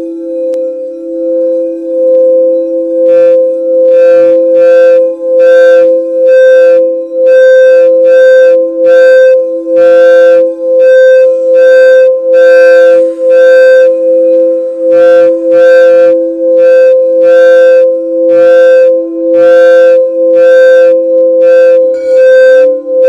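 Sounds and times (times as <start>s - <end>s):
singing bowls sustained tones: 0.0s - 7.2s, 9.4s - 17.3s.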